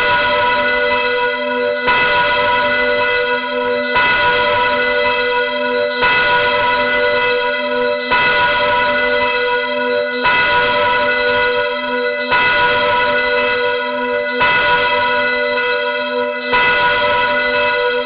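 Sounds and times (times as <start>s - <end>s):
church bell tolling: 0.0s - 18.0s.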